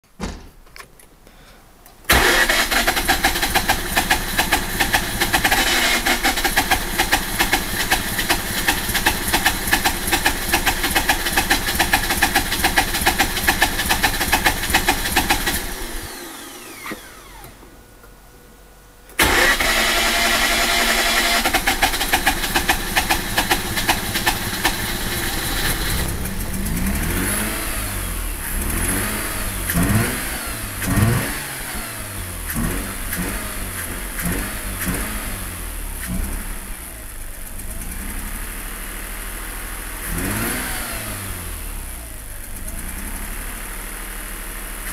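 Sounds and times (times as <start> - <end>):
rotary engine running rough: 3.0 - 17.4, 19.2 - 38.4.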